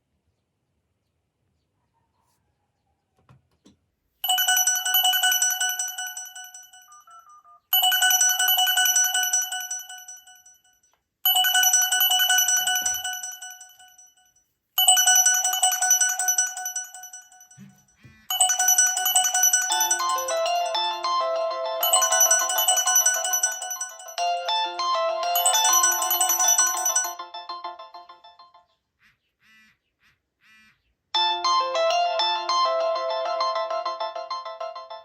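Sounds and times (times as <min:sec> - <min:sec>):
melodic ringtone: 0:04.2 - 0:10.7, 0:11.3 - 0:28.7, 0:31.2 - 0:35.0
chiming phone ringtone: 0:04.2 - 0:28.7, 0:31.2 - 0:35.0.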